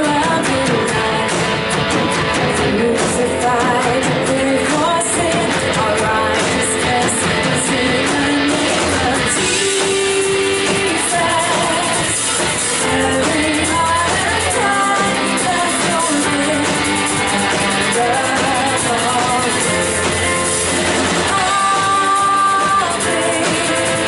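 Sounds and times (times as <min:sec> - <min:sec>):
worship band playing: 0:00.0 - 0:24.0
voices singing a melody: 0:02.4 - 0:24.0.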